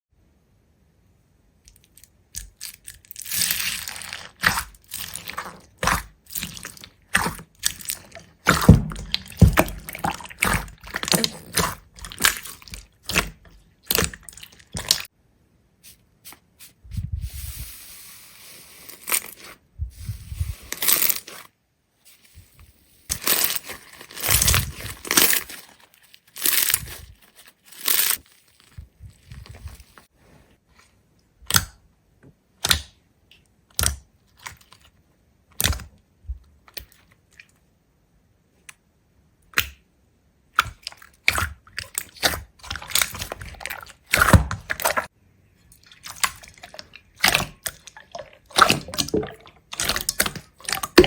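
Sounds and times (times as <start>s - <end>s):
close-up crunching and crackling: 1.7s - 15.1s, 22.4s - 30.2s, 40.6s - 51.0s.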